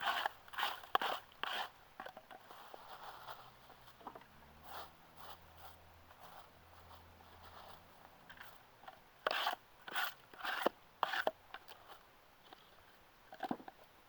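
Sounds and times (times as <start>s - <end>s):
knife scraping wood: 0.0s - 3.5s, 9.2s - 12.8s.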